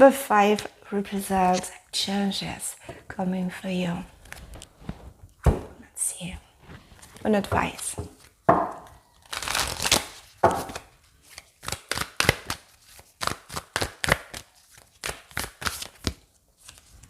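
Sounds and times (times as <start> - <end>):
cards being shuffled: 6.9 - 17.0.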